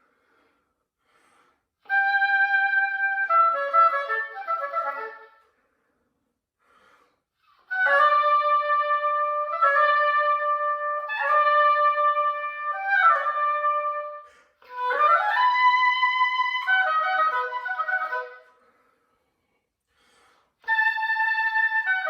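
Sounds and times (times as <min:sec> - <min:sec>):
solo oboe playing: 0:01.8 - 0:05.6, 0:07.5 - 0:18.8, 0:20.6 - 0:22.0.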